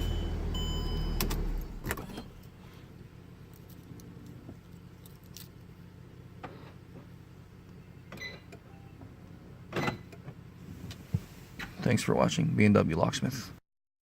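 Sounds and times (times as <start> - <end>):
diesel engine starting and idling: 0.0 - 3.3.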